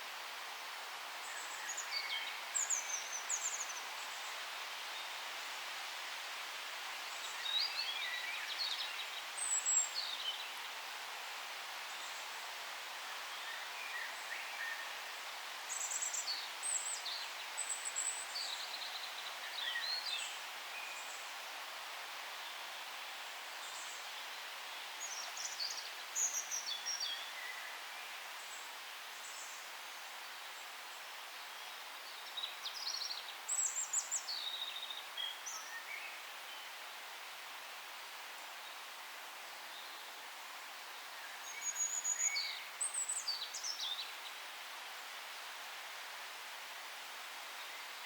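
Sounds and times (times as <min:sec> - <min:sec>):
forest ambience hiss: 0:00.0 - 0:48.0
songbirds singing: 0:31.4 - 0:37.0, 0:39.5 - 0:45.0.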